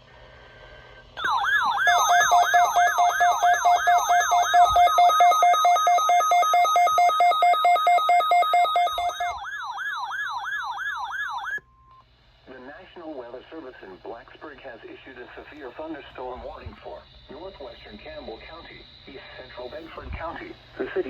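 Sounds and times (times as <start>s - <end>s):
electronic siren sweeping wail: 1.2s - 11.6s.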